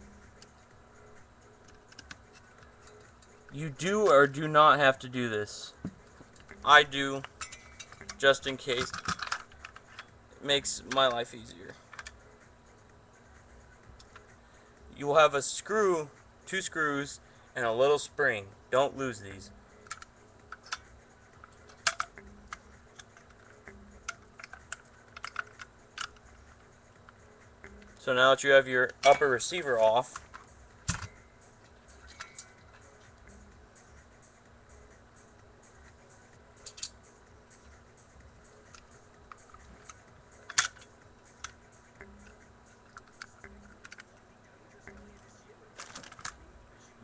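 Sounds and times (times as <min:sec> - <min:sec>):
clicks of gun parts handled: 0:07.2 - 0:10.1, 0:36.6 - 0:37.0, 0:38.7 - 0:41.6, 0:42.9 - 0:44.2
gun parts clicking: 0:07.2 - 0:10.1, 0:19.8 - 0:26.4, 0:36.6 - 0:37.0, 0:38.6 - 0:41.6, 0:42.2 - 0:44.2, 0:45.8 - 0:46.4.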